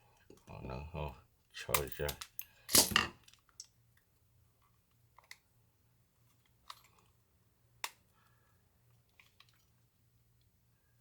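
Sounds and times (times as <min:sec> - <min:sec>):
small metal parts clicking: 0:01.7 - 0:03.7.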